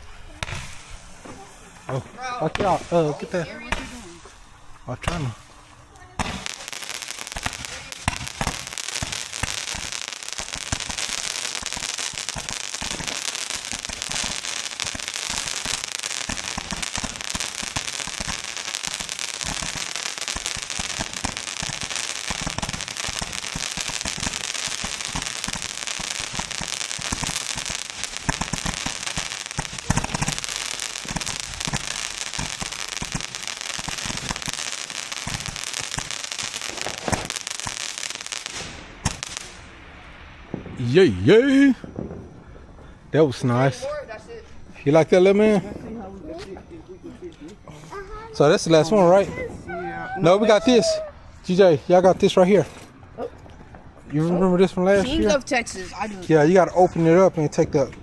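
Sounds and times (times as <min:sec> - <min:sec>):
firework bang: 0:00.0 - 0:44.8
firework crackling pops: 0:00.0 - 0:49.7, 0:50.4 - 0:58.0.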